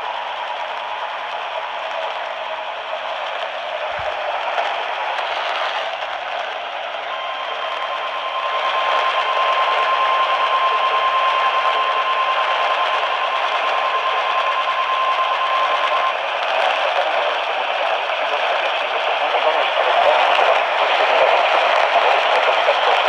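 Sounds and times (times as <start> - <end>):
radio static hiss: 1.4 - 23.0
steady high alarm tone: 7.1 - 22.7.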